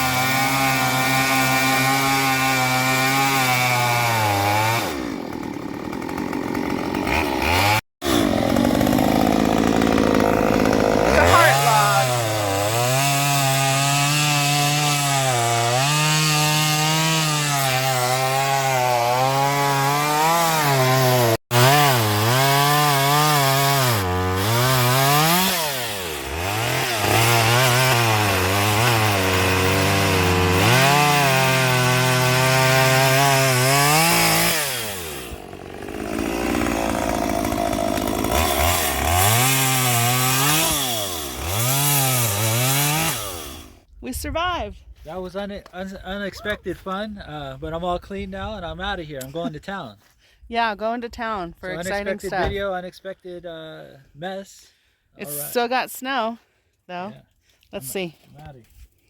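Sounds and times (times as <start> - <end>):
chainsaw cutting a log: 0.0 - 43.9.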